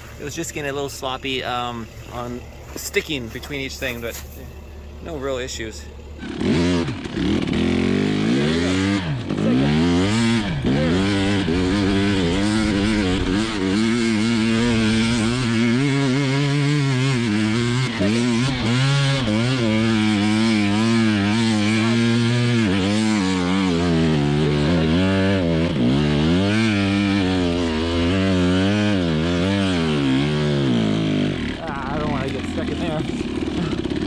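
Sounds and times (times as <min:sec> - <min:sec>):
two-stroke engine revving: 0:00.0 - 0:34.0.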